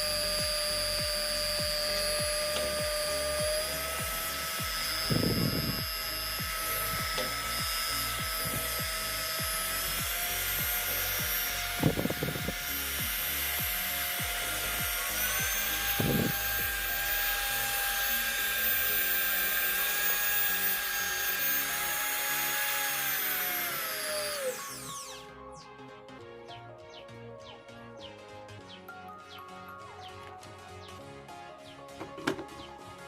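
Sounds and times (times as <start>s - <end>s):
rough grinding bursts: 0.0s - 25.3s
rotary tool motor whining: 0.0s - 25.4s.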